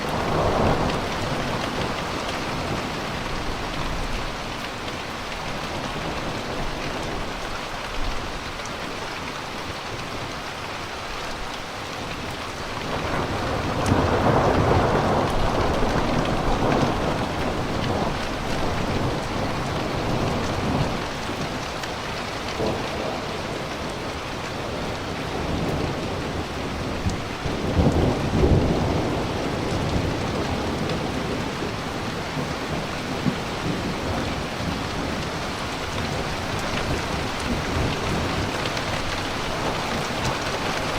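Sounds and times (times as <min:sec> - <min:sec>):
thunder rumbling: 0:00.0 - 0:04.3, 0:12.8 - 0:21.7, 0:22.4 - 0:40.9
steady rain falling: 0:00.0 - 0:40.9.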